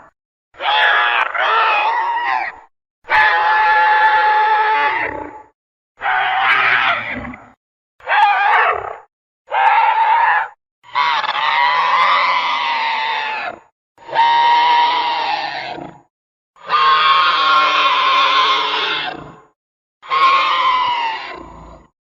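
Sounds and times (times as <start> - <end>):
monster shrieking roars: 0.6 - 5.4, 6.0 - 7.4, 8.0 - 15.9, 16.6 - 19.4, 20.0 - 21.9.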